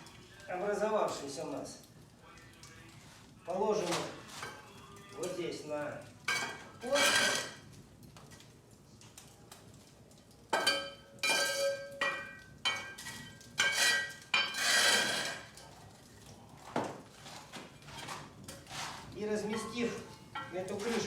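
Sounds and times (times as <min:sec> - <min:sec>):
metal scraping: 0:06.3 - 0:07.6, 0:13.6 - 0:15.5
metal tools clanking on stone: 0:06.3 - 0:07.6, 0:10.5 - 0:15.8, 0:19.4 - 0:21.0.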